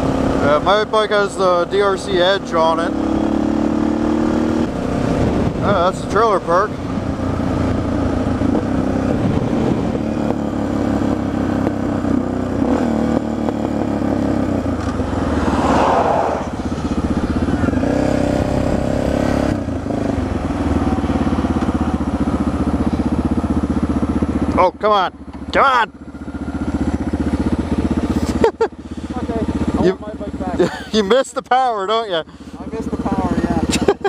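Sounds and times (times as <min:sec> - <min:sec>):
motorcycle engine running: 0:00.0 - 0:34.0
wind noise: 0:14.6 - 0:19.1.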